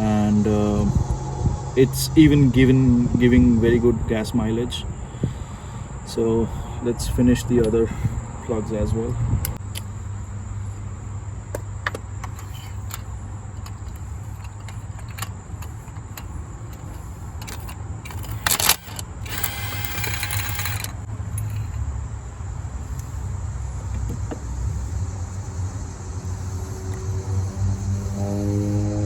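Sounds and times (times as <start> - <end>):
steady low hum: 0.0 - 29.0
tools clattering: 11.5 - 21.9
metal tools clinking: 11.9 - 21.9.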